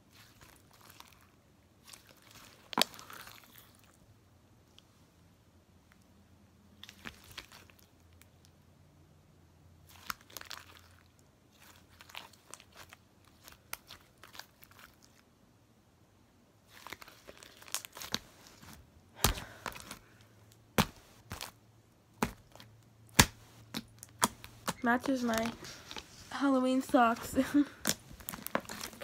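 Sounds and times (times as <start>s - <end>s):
slime squishing and crackling: 0.0s - 4.0s, 6.8s - 8.4s, 9.8s - 15.2s, 16.6s - 21.6s, 22.2s - 29.0s
sharp slime pops: 19.2s - 20.0s, 20.8s - 21.5s, 22.2s - 24.8s.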